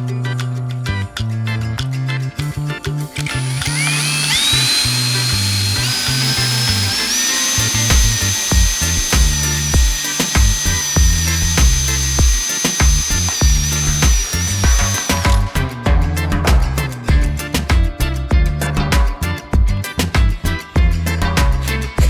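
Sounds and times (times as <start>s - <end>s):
power tool motor whining: 3.2s - 15.6s
background music with a beat: 6.6s - 22.0s.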